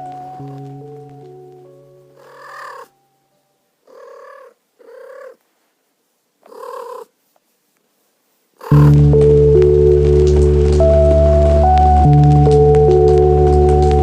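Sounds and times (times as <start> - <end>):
soft ambient music: 0.0 - 4.4, 8.6 - 14.0
kitten meowing: 2.2 - 2.9, 3.9 - 5.4, 6.5 - 7.1, 8.6 - 9.0.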